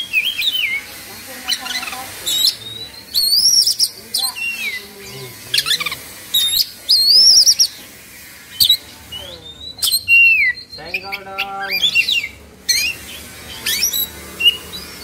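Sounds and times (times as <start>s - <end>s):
bird singing whistled phrases: 1.5s - 4.9s, 5.6s - 7.7s, 8.6s - 15.0s.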